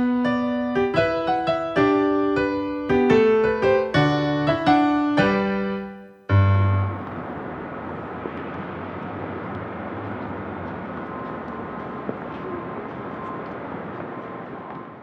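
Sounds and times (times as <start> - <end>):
piano chord: 0.0 - 7.7
outdoor background noise with hum: 6.9 - 15.0.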